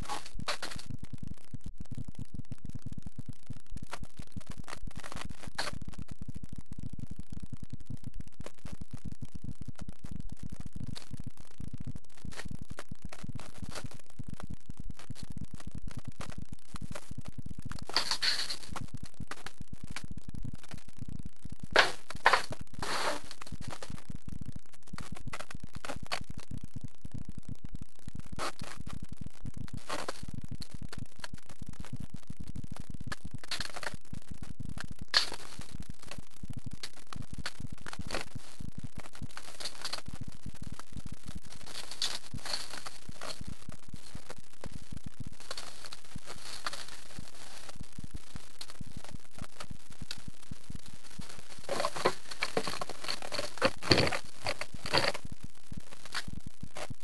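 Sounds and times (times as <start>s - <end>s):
scratching and rustling: 17.8s - 18.8s, 51.6s - 55.2s
scrapes: 17.9s - 18.7s.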